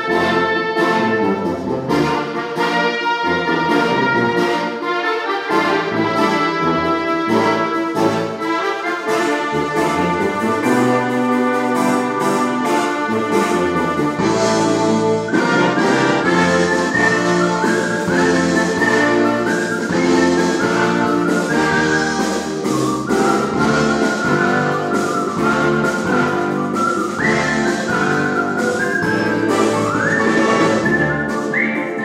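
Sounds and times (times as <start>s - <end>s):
orchestral music with brass: 0.0s - 32.0s
person whistling a melody: 14.2s - 32.0s.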